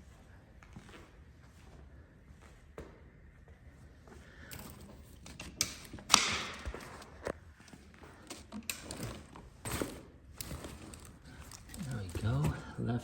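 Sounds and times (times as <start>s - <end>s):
packing rustle: 6.8s - 12.9s.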